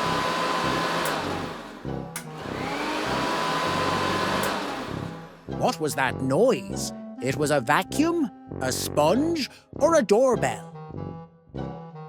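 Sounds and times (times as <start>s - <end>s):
vacuum cleaner running: 0.0s - 5.6s.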